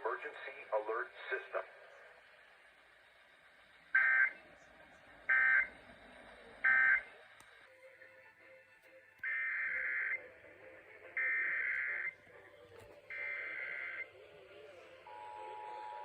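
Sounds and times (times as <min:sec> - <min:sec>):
two-tone attention signal: 0:15.0 - 0:16.0.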